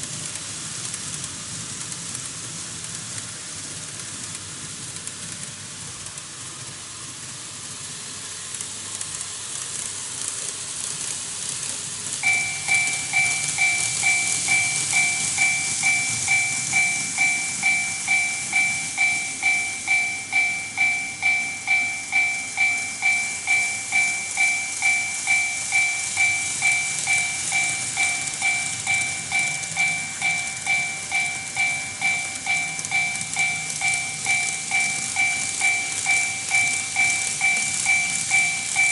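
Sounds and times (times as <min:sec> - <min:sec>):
model trains rattling on track: 0:00.0 - 0:38.9
level crossing warning bell: 0:12.2 - 0:38.9.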